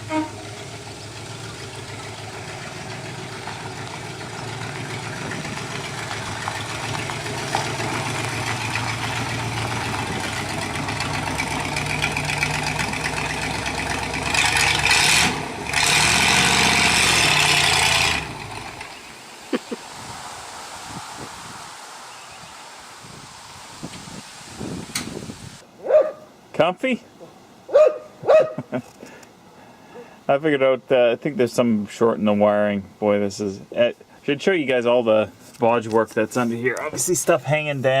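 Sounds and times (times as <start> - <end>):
pickup truck engine revving: 0.0 - 19.2.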